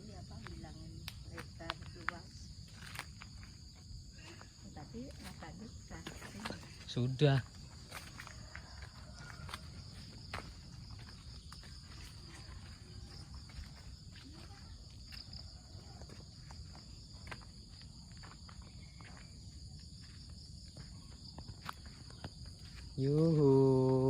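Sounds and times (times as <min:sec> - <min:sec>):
insect chorus chirring: 0:00.0 - 0:24.0.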